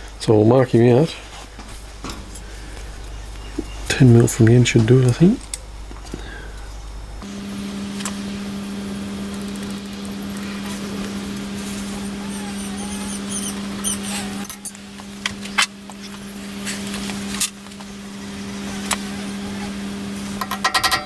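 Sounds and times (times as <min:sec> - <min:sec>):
low electrical hum: 0:00.0 - 0:21.0
clicks of metal parts and tools: 0:20.4 - 0:21.0.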